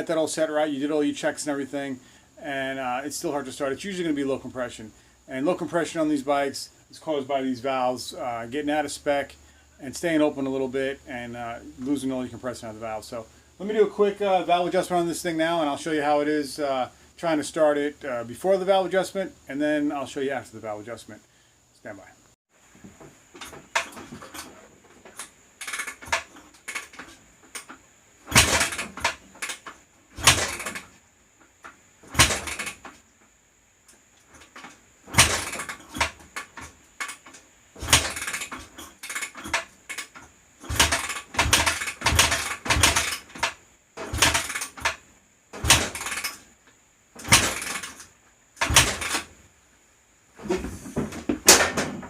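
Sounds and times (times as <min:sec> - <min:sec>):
motorcycle engine being kickstarted: 0:23.0 - 0:31.0, 0:32.1 - 0:33.0, 0:34.4 - 0:45.0, 0:45.6 - 0:46.5, 0:47.2 - 0:49.3.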